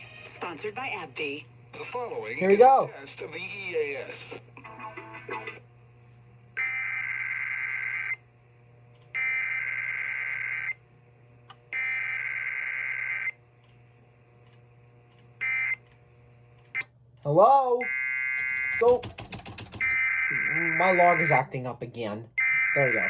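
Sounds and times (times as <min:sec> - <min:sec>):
steady low hum: 0:00.0 - 0:23.0
buzzing digital data tones: 0:06.6 - 0:08.2, 0:09.2 - 0:10.8.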